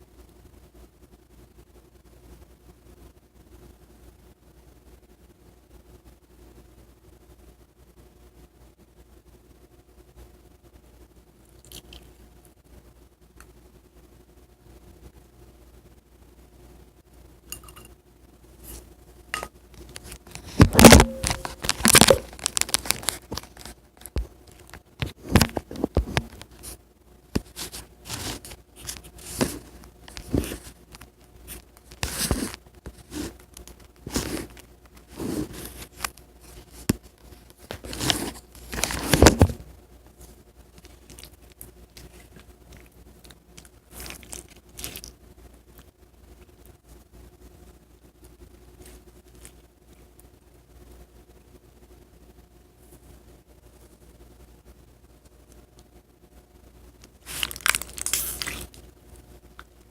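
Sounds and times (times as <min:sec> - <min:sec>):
slime crackling and squelching: 0:20.0 - 0:25.5, 0:40.8 - 0:45.2, 0:57.2 - 0:58.8.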